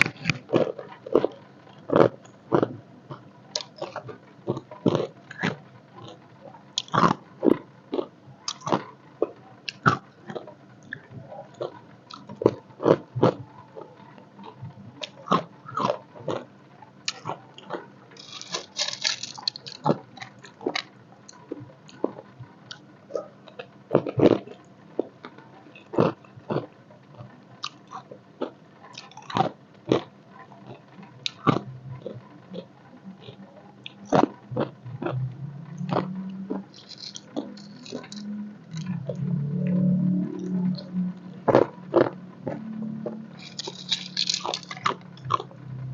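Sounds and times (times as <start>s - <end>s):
ice cubes crunched between teeth: 18.2s - 20.0s, 36.7s - 38.2s, 43.4s - 45.0s.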